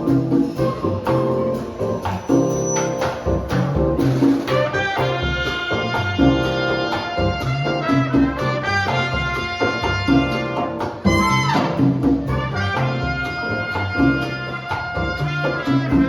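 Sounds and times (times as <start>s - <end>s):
latin jazz band playing live: 0.0s - 16.0s
trumpet horn lines: 4.5s - 16.0s.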